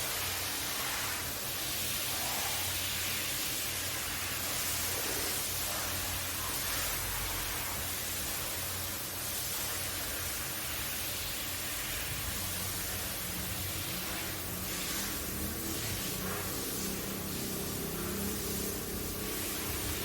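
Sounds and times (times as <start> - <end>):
carpet brush scrubbing hiss: 0.0 - 20.0.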